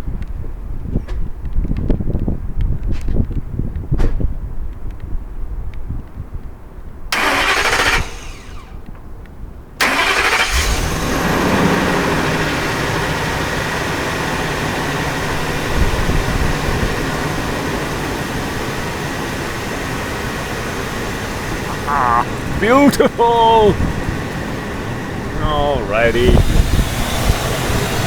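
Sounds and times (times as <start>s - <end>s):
engine starting and idling: 7.1s - 8.9s, 9.8s - 15.2s.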